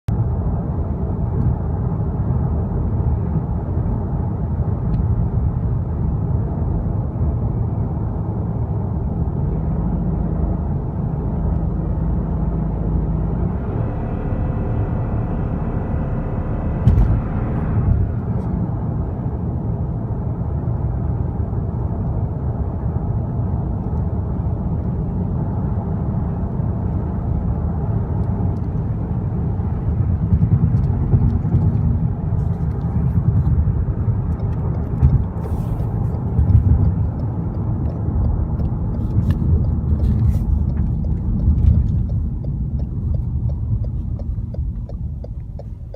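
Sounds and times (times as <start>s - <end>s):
road noise: 0.1s - 45.9s
steady tone: 11.2s - 20.5s
car engine misfiring: 13.2s - 18.9s.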